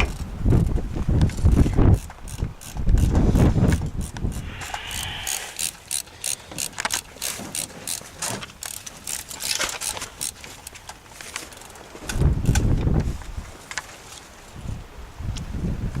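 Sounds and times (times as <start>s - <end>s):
sharp irregular clicks and crackles: 0.0s - 12.7s.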